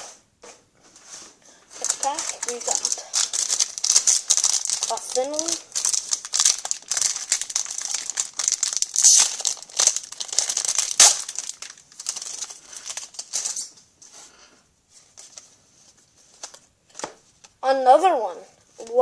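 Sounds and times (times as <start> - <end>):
foil wrapper crinkling: 1.7 - 13.8.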